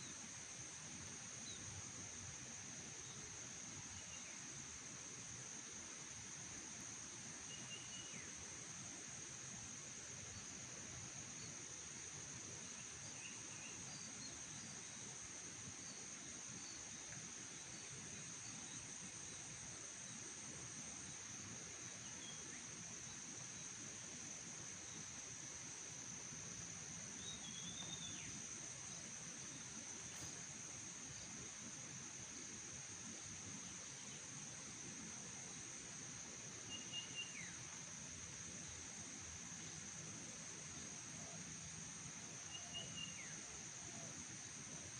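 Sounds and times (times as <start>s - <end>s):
crickets trilling: 0.0s - 44.9s
insect chorus droning: 0.0s - 44.9s.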